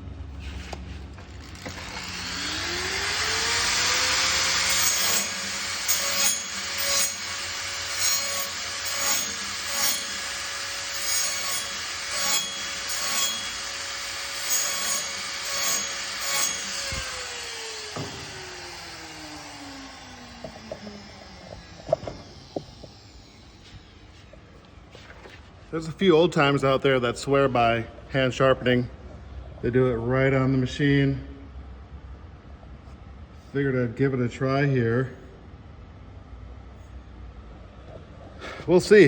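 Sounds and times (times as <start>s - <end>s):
small motor running: 1.3s - 9.4s, 16.8s - 24.0s
file rasping saw teeth: 1.8s - 17.3s.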